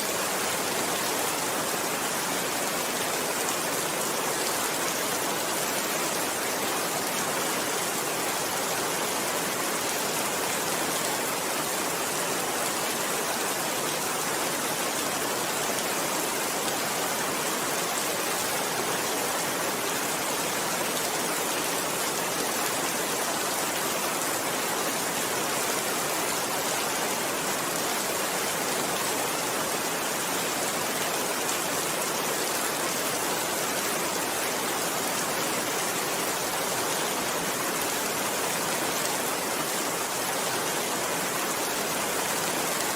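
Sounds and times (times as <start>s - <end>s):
steady rain falling: 0.0s - 42.9s.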